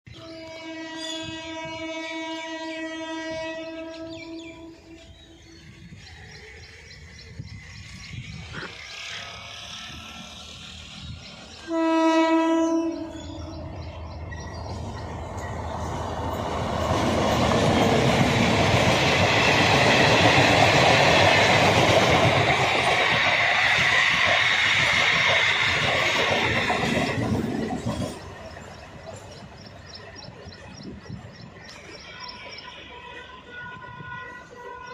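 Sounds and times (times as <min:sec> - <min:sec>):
train horn blast: 0:00.1 - 0:05.4, 0:11.6 - 0:13.9, 0:32.1 - 0:34.9
train wheels rumbling and clattering: 0:04.1 - 0:11.7, 0:12.8 - 0:32.7.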